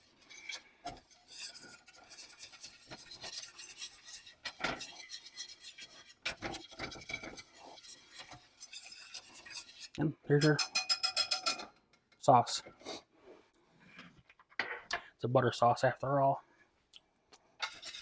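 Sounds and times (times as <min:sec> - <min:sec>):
utensil scraping a pan: 0:00.0 - 0:12.1, 0:17.6 - 0:18.0.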